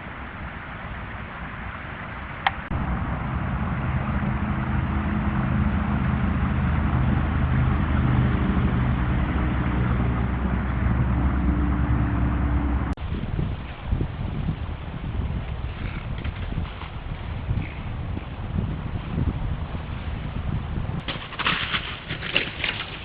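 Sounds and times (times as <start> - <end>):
engine humming: 2.4 - 13.0.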